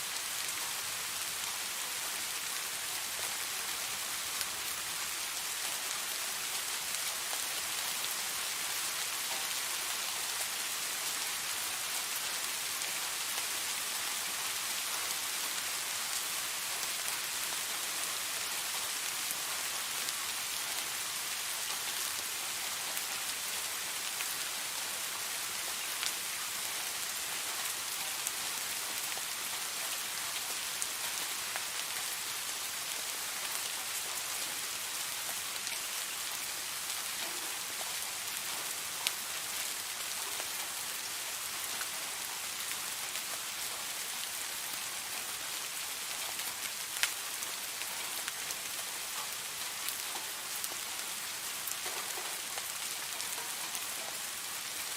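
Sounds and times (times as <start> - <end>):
rain falling: 0.0 - 54.9
raindrop ticks: 37.2 - 37.6.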